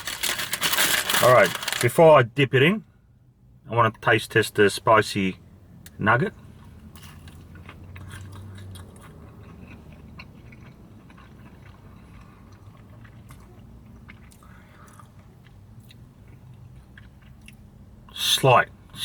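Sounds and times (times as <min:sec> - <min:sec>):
person chewing: 0:06.6 - 0:17.6.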